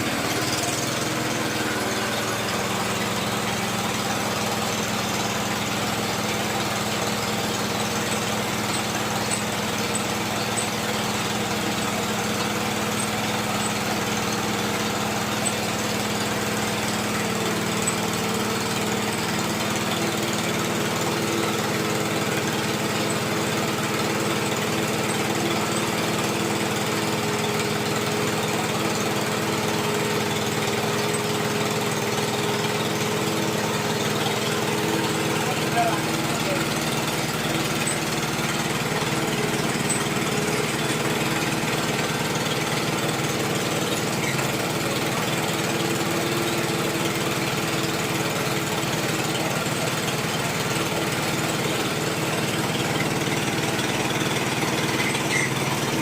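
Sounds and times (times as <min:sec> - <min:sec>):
drilling machine engine running: 0:00.0 - 0:56.0.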